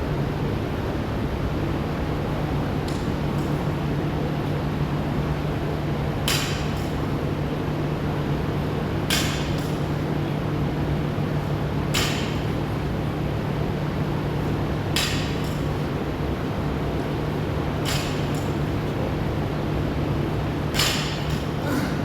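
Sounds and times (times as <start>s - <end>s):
steady machine hum: 0.0s - 22.0s.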